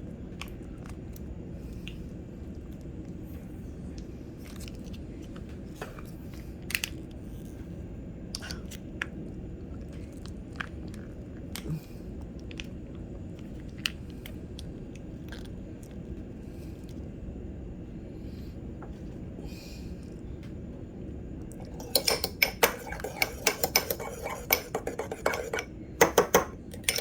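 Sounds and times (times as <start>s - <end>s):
steady low hum: 0.0s - 27.0s
spoon tapping small container: 21.8s - 27.0s.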